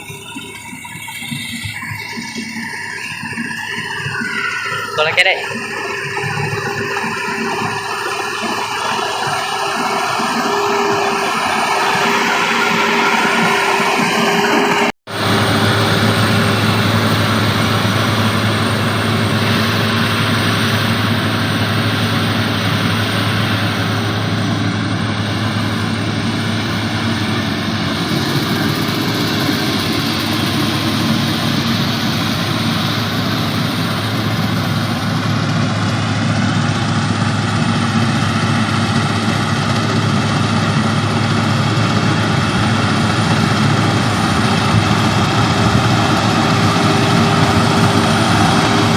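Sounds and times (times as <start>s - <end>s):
combine harvester engine hum: 0.0s - 48.9s
rush of machine noise: 0.0s - 48.9s.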